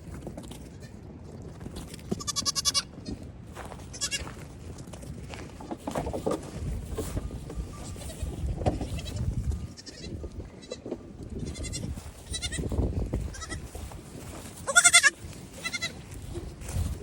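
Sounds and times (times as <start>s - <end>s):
goat kids bleating: 2.1s - 3.2s, 3.9s - 4.3s, 7.8s - 13.8s, 14.6s - 16.2s.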